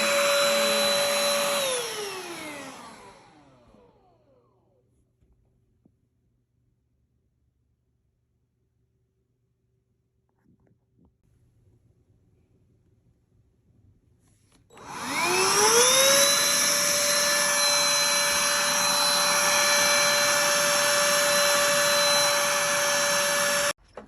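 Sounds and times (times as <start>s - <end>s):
handheld vacuum motor whine: 0.0s - 4.6s, 14.7s - 23.8s.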